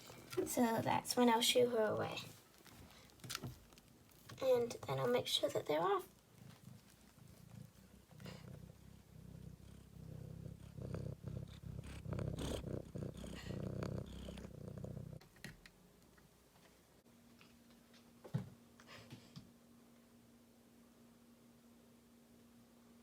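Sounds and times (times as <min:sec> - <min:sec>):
cat purring: 0:00.0 - 0:15.5.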